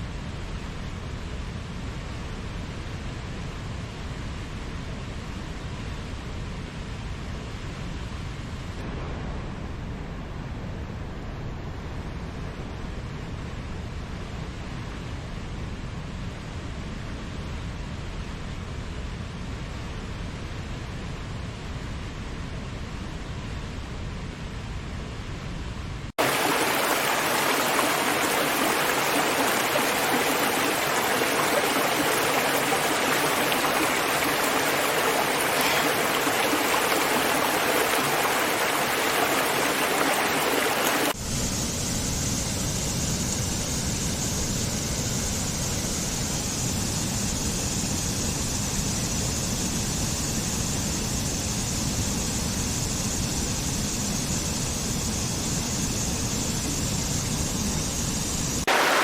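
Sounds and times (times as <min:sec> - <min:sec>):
deeper rushing water: 0:26.2 - 0:41.2, 0:58.6 - 0:59.0
rushing water: 0:26.2 - 0:41.2, 0:58.5 - 0:59.0.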